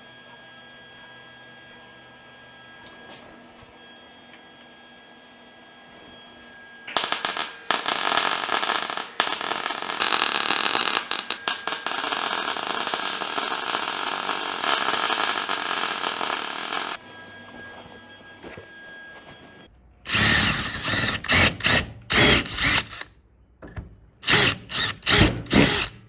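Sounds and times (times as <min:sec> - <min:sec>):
welding arc crackling: 0:06.9 - 0:17.0, 0:20.1 - 0:23.0, 0:24.2 - 0:26.0.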